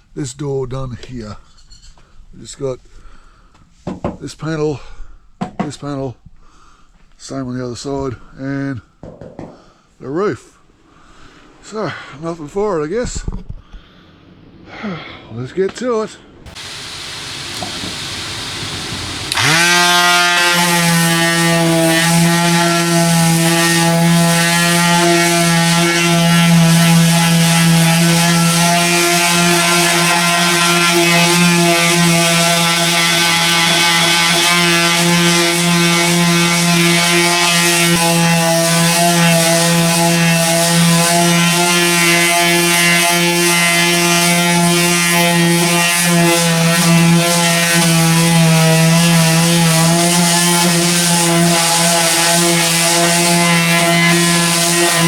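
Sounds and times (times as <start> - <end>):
power sander on metal panel: 16.5 - 55.0.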